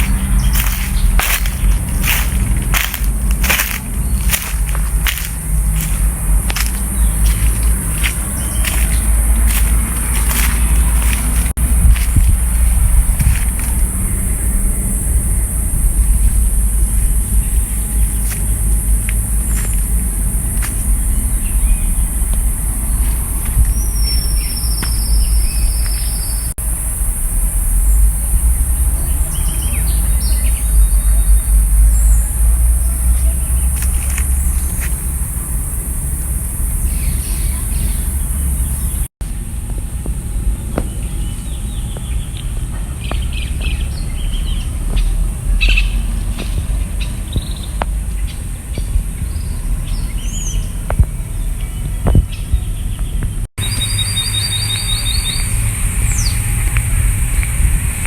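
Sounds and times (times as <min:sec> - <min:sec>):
bird chirps: 0:00.0 - 0:11.5, 0:47.0 - 0:56.4
high bird trill: 0:00.0 - 0:11.5
birds chirping: 0:00.0 - 0:27.0, 0:28.2 - 0:39.1, 0:40.6 - 0:56.8
insect-like hiss: 0:00.0 - 0:39.1, 0:53.7 - 0:58.0
low rumble: 0:00.0 - 0:53.5.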